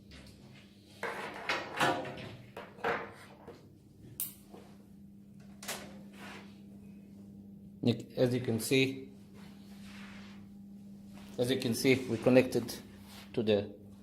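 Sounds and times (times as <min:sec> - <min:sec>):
faint hum: 0:03.2 - 0:14.0.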